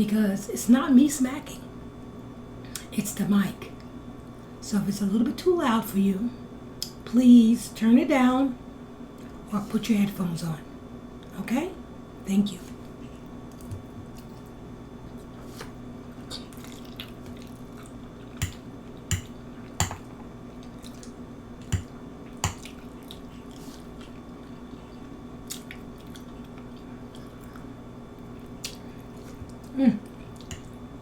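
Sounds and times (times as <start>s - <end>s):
steady low hum: 0.0s - 31.0s
chewing with lip-smacks: 16.2s - 19.8s, 20.5s - 21.2s, 22.2s - 30.8s.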